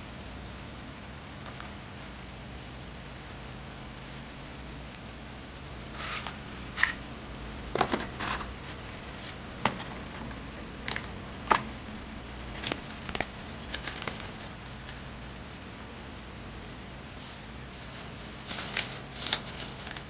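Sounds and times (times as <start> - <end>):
packaging rustling: 7.7 - 11.7, 12.5 - 15.0, 17.1 - 20.0
steady hiss: 8.4 - 20.0
packaging clicks: 10.6 - 11.7, 12.6 - 15.0.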